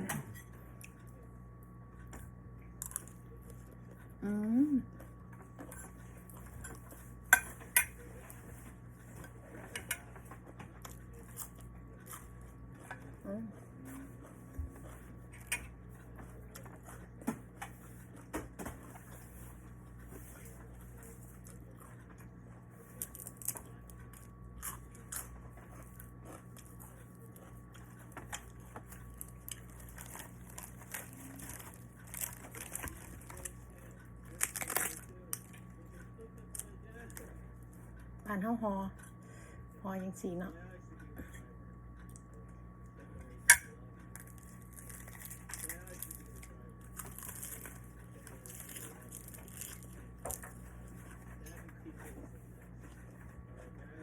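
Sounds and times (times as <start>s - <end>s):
person chewing and biting food: 23.0s - 33.5s, 44.2s - 51.2s.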